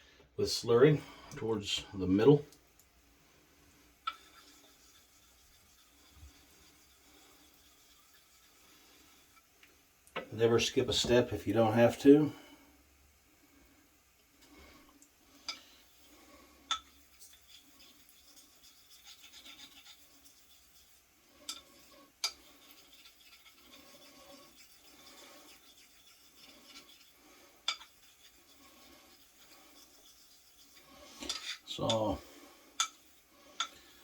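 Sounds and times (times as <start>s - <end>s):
razor rubbing on a wet stone: 4.1s - 9.5s, 17.0s - 32.1s.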